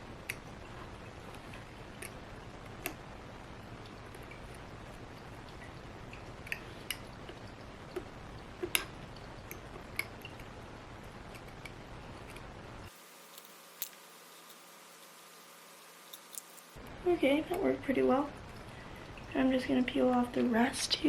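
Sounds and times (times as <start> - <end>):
steady low hiss: 0.0 - 21.0
metal tool clicks and scrapes: 13.2 - 14.7, 16.1 - 16.8.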